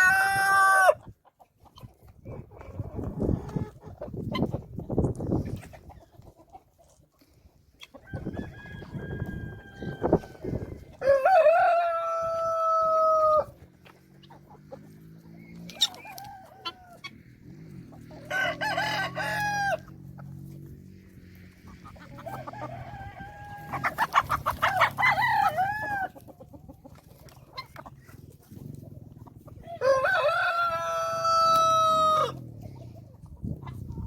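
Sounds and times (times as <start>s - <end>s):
chickens clucking: 0.0s - 34.0s
rooster crowing: 8.2s - 13.5s, 18.2s - 19.9s, 22.3s - 24.0s, 24.8s - 26.1s, 29.6s - 32.4s.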